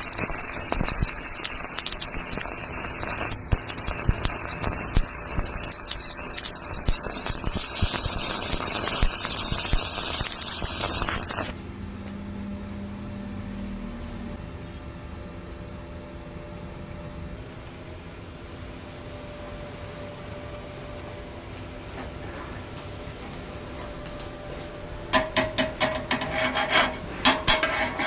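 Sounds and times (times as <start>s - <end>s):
arc welding crackling hiss: 0.0s - 11.6s, 25.4s - 28.0s.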